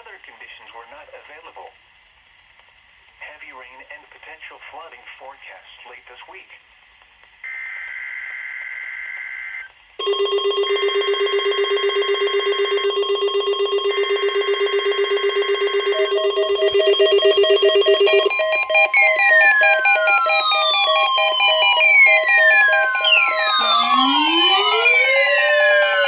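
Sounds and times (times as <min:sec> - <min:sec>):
electronic alert alarm beeping: 0:10.0 - 0:26.0
shrill buzzing digital bursts: 0:11.2 - 0:26.0.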